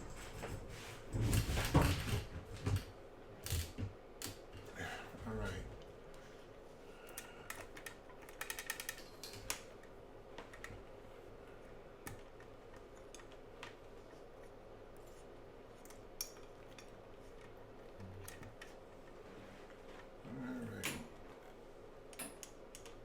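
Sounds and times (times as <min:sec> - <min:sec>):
faint steady hum: 0:00.0 - 0:23.0
test equipment clicks and clatter: 0:07.5 - 0:09.7.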